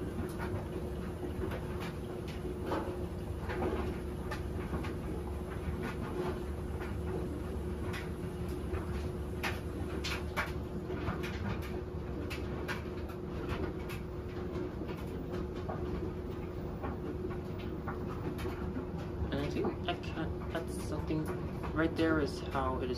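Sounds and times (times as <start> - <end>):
washing machine motor hum: 0.0 - 22.9.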